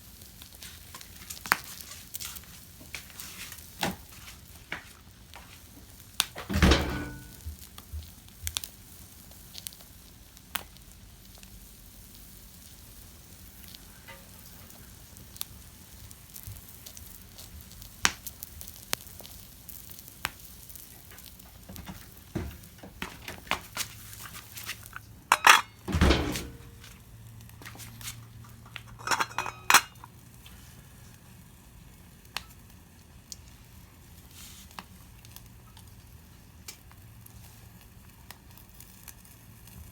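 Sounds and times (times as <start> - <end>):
pan sizzling: 0.2 - 10.6, 11.3 - 30.7
utensils clattering against pan: 6.4 - 7.4, 24.6 - 26.9, 27.9 - 30.1.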